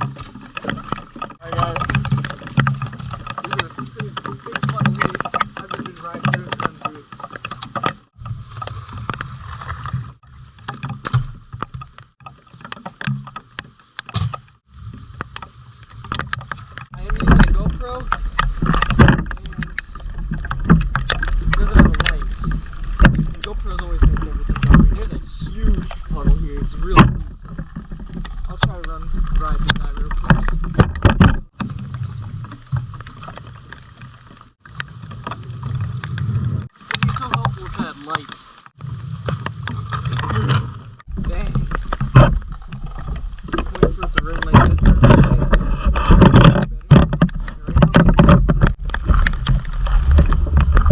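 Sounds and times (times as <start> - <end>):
raindrops tapping on microphone: 0.0 - 50.9
microphone handling noise: 14.1 - 33.4, 38.8 - 50.9
low wind rumble: 38.4 - 50.9.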